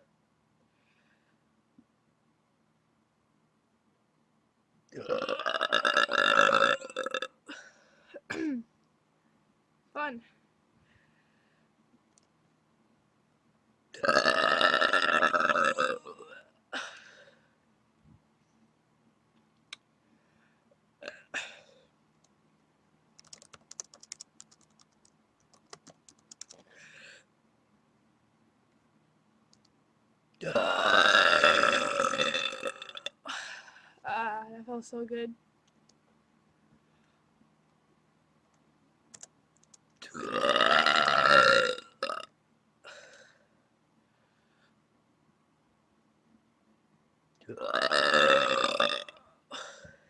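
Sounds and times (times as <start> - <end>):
person burping: 5.0 - 7.4, 14.0 - 16.6, 30.4 - 33.2, 40.0 - 42.3, 47.5 - 49.8.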